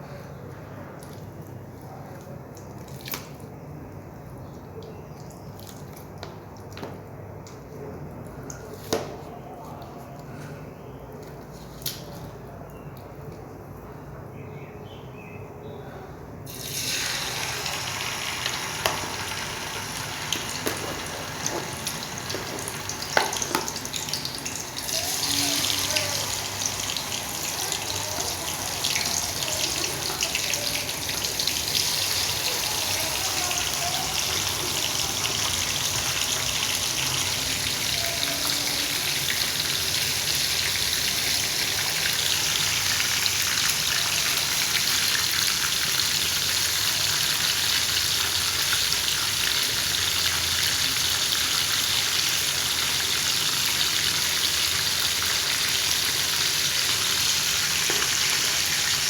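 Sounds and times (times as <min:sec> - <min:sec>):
food sizzling in hot oil: 0:16.5 - 0:59.0.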